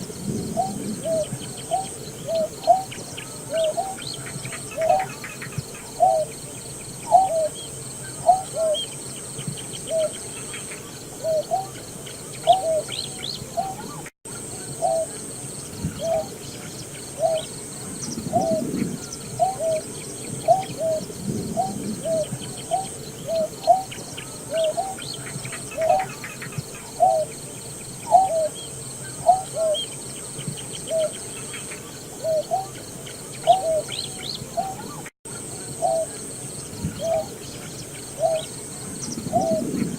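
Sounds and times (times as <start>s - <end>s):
bird hooting calls: 0.0s - 27.4s, 28.0s - 39.9s.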